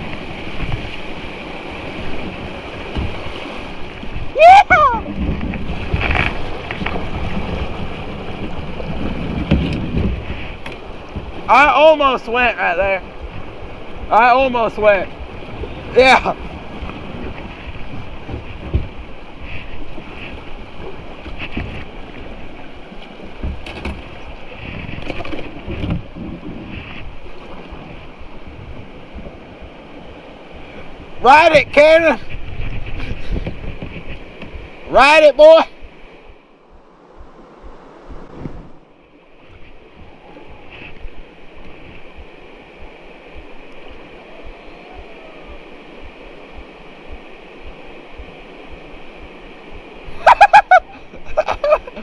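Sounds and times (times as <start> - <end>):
wind on microphone: 0.0 - 11.5, 14.9 - 34.9, 35.5 - 52.0
paddle knocks and splashes: 0.0 - 11.7, 15.2 - 36.0
creek rapids rushing: 0.0 - 52.0.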